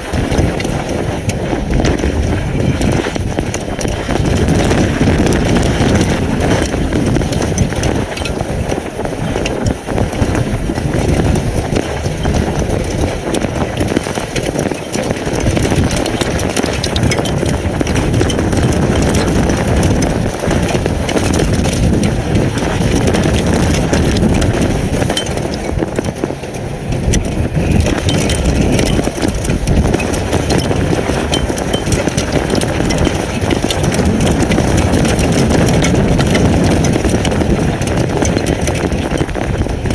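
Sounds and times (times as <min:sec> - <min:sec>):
hail and rain striking: 0:00.0 - 0:39.9
wind buffeting microphone: 0:00.0 - 0:39.9.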